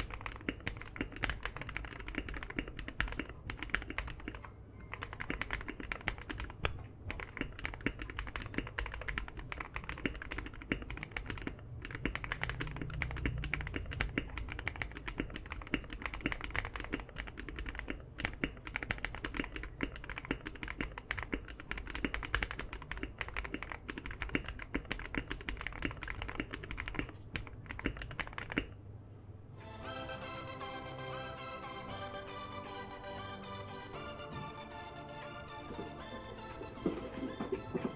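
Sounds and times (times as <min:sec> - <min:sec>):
fast typing on mechanical keyboard: 0:00.0 - 0:28.8.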